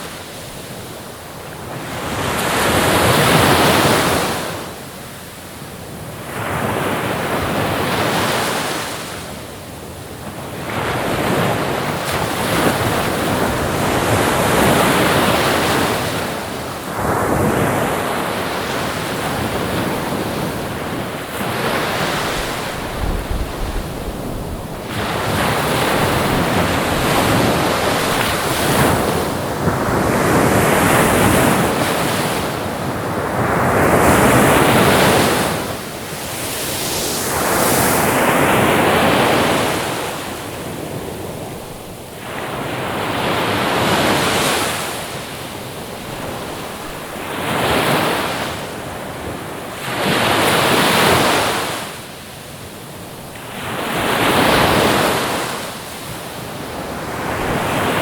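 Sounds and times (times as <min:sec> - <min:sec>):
wind noise: 0:10.2 - 0:44.9
ocean waves breaking: 0:10.6 - 0:52.0.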